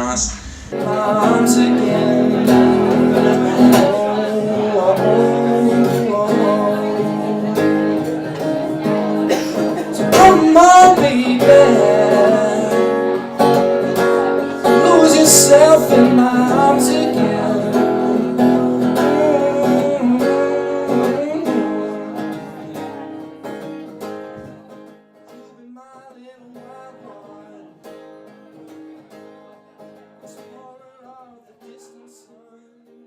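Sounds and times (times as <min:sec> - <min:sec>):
person singing: 0:00.0 - 0:23.6
strummed acoustic guitar: 0:00.0 - 0:33.0.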